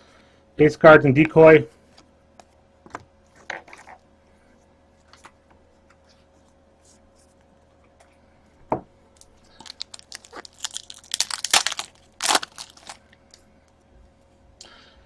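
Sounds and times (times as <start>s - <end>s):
foil wrapper tearing and crinkling: 9.6s - 13.0s.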